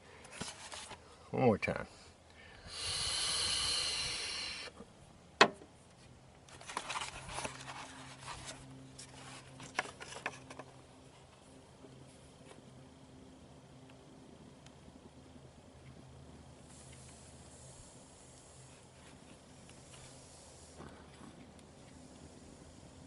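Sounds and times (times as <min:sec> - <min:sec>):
steady hiss of air: 0:00.0 - 0:05.7, 0:11.2 - 0:23.0
faint handling rustles: 0:00.2 - 0:01.1, 0:05.9 - 0:12.7.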